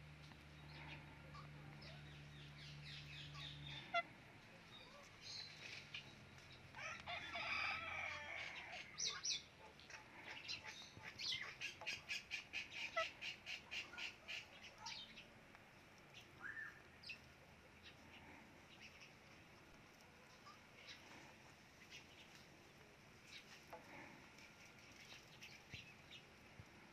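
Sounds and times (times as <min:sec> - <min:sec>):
parrot chattering and chirping: 0:09.9 - 0:15.1.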